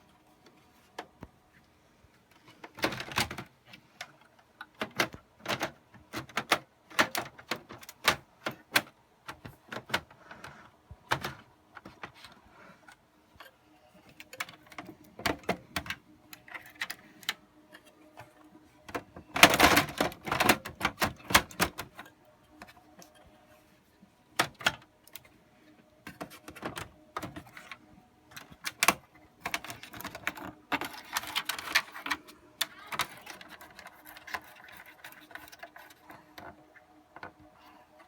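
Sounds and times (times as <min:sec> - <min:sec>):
faint steady hum: 0:00.0 - 0:38.0
metal parts clicking and rattling: 0:13.4 - 0:23.3, 0:26.0 - 0:38.0.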